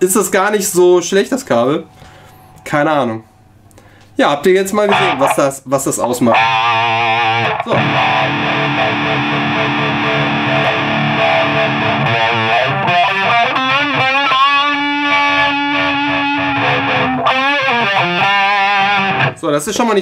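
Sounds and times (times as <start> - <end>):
distorted electric guitar with wah: 4.8 - 5.5, 6.2 - 19.4.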